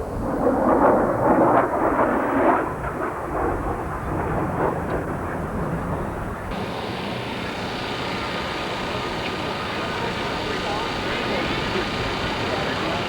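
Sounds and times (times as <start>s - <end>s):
model car motors buzzing: 6.5s - 13.0s.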